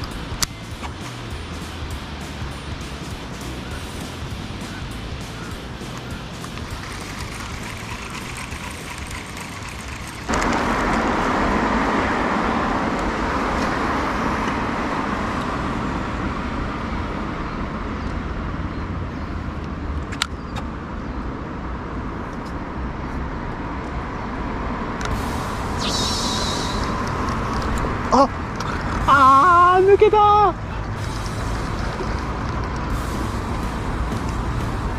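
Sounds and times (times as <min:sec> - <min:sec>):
boat motor running: 0:00.0 - 0:13.9.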